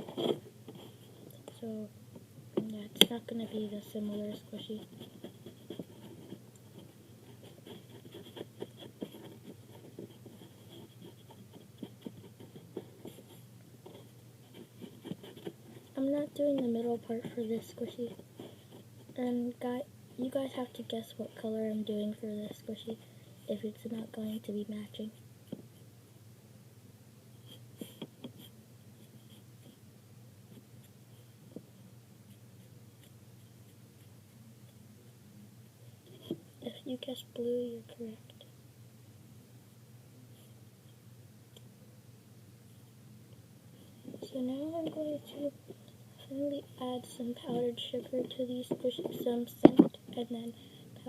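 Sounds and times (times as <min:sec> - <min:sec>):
drawing tool scratching on paper: 0:00.0 - 0:01.2, 0:03.3 - 0:19.2.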